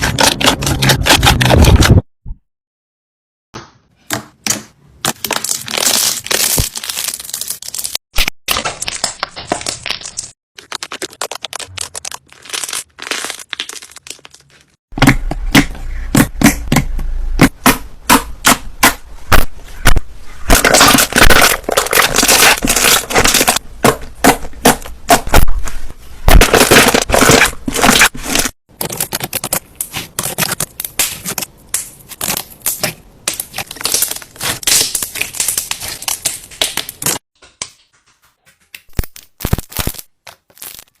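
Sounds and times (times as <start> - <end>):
slime popping and crackling: 5.1 - 14.6, 20.5 - 25.4, 26.3 - 37.2, 38.9 - 41.0.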